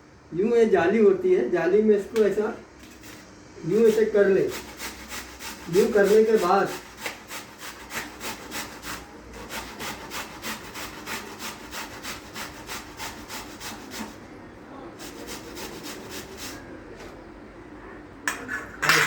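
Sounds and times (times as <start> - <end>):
onion grated on a grater: 2.8 - 14.2, 15.0 - 16.6.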